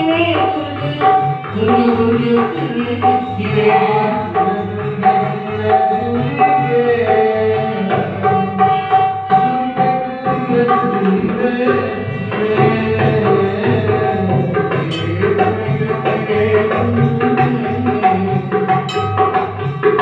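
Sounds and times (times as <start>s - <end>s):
tabla drumming: 0.0s - 20.0s
sustained melody line: 14.8s - 15.5s, 18.9s - 20.0s.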